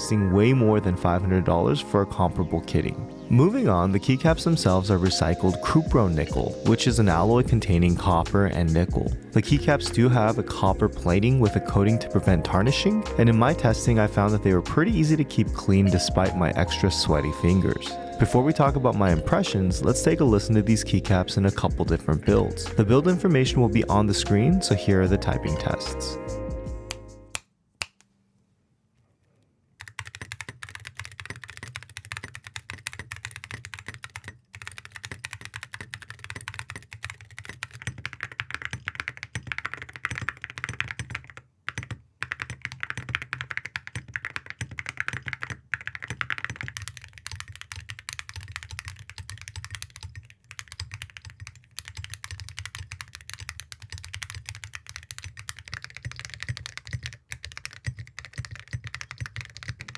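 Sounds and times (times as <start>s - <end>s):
fast typing on mechanical keyboard: 4.3s - 19.2s, 29.8s - 59.9s.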